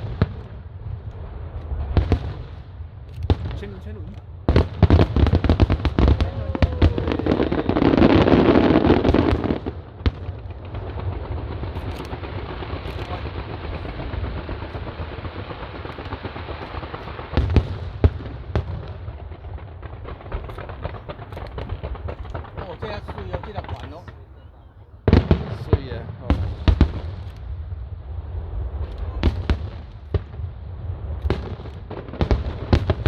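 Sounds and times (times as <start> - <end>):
fireworks crackling bangs: 0.0 - 33.0
crowd hum: 5.4 - 9.9, 10.6 - 25.6.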